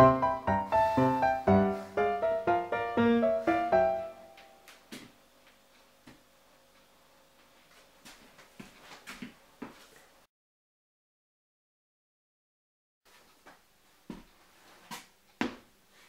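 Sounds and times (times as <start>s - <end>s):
piano music: 0.0s - 4.8s.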